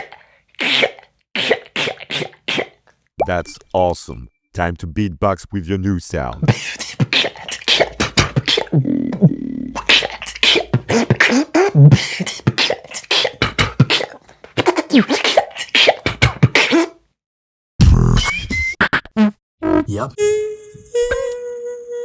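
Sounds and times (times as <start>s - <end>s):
beatboxing: 0.6s - 3.7s, 6.4s - 17.0s.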